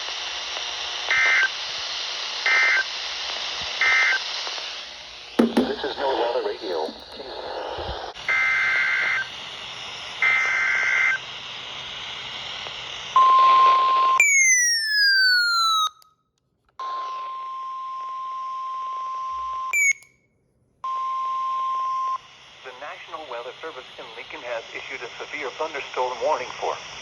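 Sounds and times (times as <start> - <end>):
radio hiss: 0.0 - 14.0, 22.2 - 27.0.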